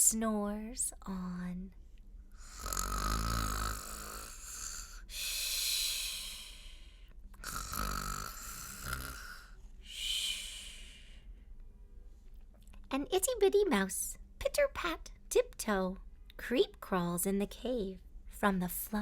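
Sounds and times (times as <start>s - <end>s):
person imitating snoring: 2.4s - 6.6s, 7.4s - 9.5s.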